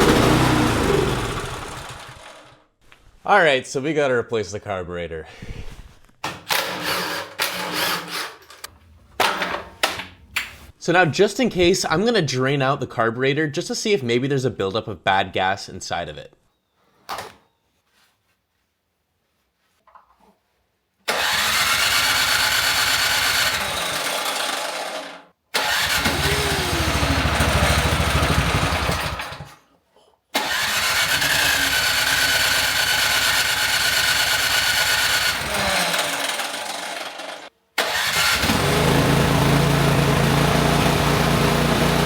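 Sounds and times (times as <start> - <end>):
small gasoline engine running: 0.0 - 2.6, 21.1 - 29.6, 30.4 - 42.0.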